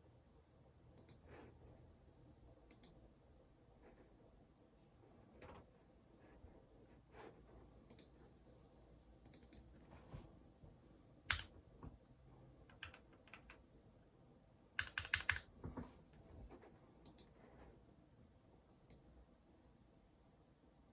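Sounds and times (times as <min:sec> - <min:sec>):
mechanical keyboard keystrokes: 0:11.3 - 0:11.5, 0:12.7 - 0:13.6, 0:14.8 - 0:15.5.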